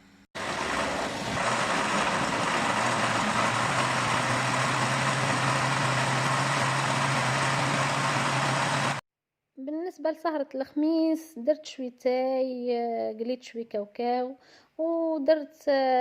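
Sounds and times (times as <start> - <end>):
blender whirring: 0.4 - 9.0.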